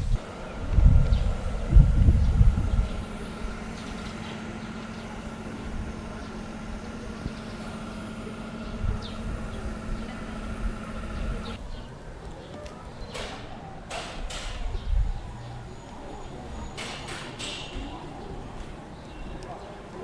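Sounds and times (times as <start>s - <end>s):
loud low rumble: 0.0s - 11.6s
steady mechanical hum: 0.0s - 20.0s.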